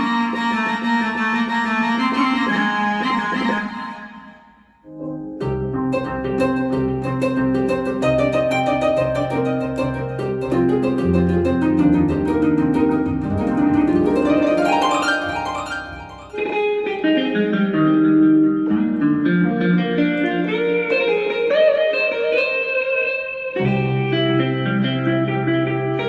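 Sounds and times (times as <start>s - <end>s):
synthesizer plucked tones: 0.0s - 16.8s
held synth bass: 2.6s - 16.4s.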